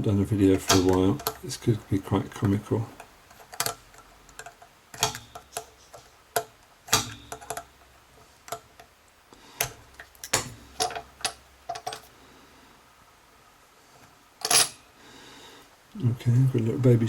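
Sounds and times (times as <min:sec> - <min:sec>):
metallic clicks of tools on padlock: 0:03.0 - 0:07.7.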